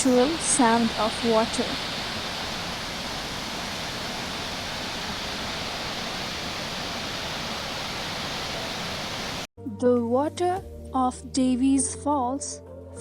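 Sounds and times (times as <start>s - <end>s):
waterfall roaring: 0.0s - 9.5s.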